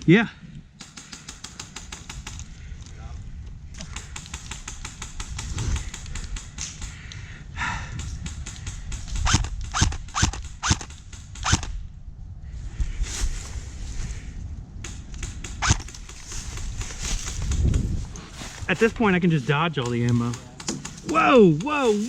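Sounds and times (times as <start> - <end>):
airsoft guns popping: 0.8 - 2.6, 3.8 - 7.2, 7.9 - 11.8, 14.8 - 18.0, 19.8 - 21.8.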